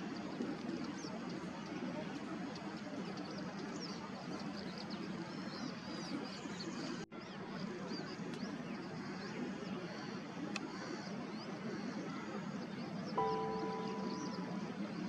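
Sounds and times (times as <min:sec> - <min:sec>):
small birds chirping: 0:00.0 - 0:15.0
steady background hiss: 0:13.1 - 0:15.0.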